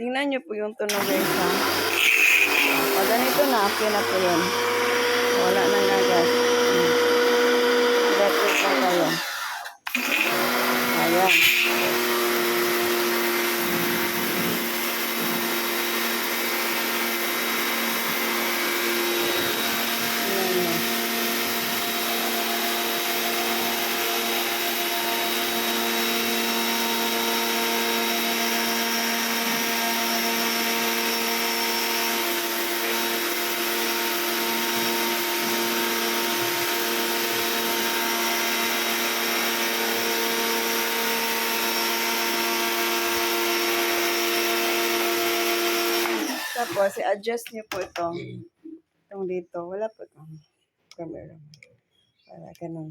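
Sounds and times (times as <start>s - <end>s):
electric pressure washer running: 0.9s - 47.0s.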